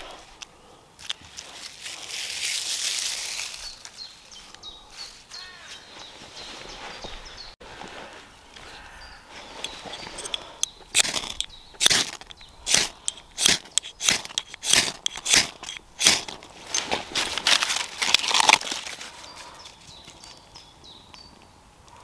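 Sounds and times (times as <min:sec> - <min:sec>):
footsteps crunching on twigs and leaves: 0:00.0 - 0:20.6.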